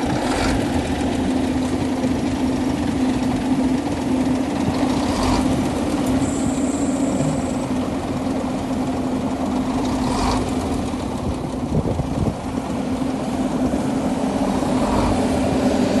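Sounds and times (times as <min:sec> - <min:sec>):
diesel engine idling: 0:00.0 - 0:16.0
short high whine: 0:06.2 - 0:07.8.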